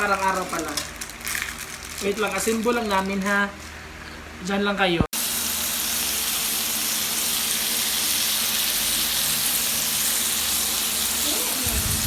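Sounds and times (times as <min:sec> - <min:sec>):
meat sizzling on griller pan: 0:05.2 - 0:12.0.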